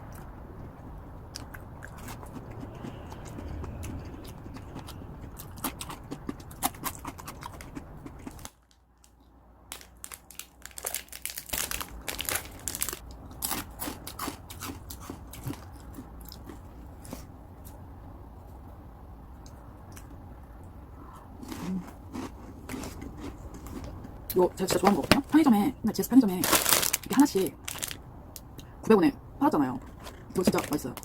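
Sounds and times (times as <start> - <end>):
chewing crunchy snack: 0.1 - 17.8, 21.1 - 24.2.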